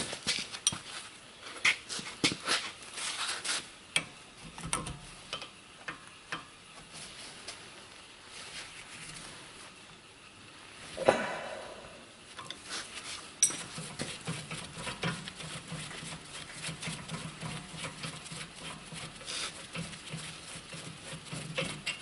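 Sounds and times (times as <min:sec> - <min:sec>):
faint low hum: 0:04.0 - 0:12.7
metal tool clicks and clinks: 0:13.4 - 0:13.6.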